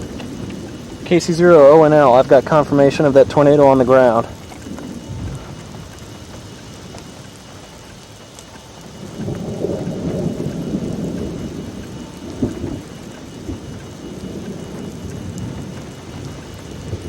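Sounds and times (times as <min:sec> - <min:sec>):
thunder rumbling: 0:00.0 - 0:17.0
sharp thunder crack: 0:09.0 - 0:17.0.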